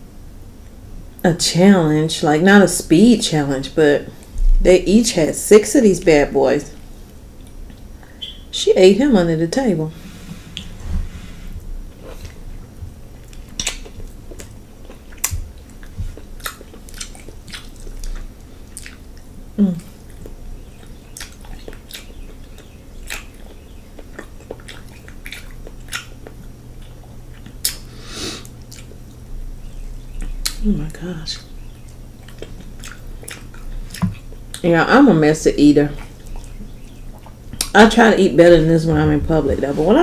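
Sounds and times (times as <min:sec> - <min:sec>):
chewing and lip-smacking: 0:12.1 - 0:29.2, 0:30.1 - 0:30.6, 0:31.4 - 0:34.7, 0:35.9 - 0:37.8.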